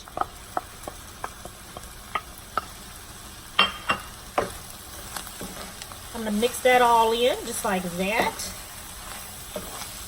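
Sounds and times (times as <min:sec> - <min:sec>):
food sizzling in a frying pan: 0:00.0 - 0:10.0
utensil scraping a pan: 0:08.1 - 0:10.0.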